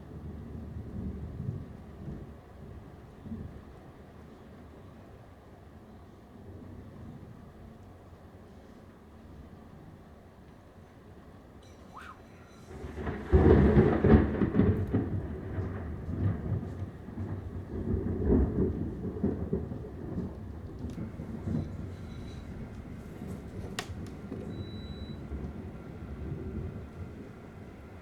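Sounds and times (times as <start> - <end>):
thunder clap and rumble: 0.0 - 3.8, 12.8 - 28.0.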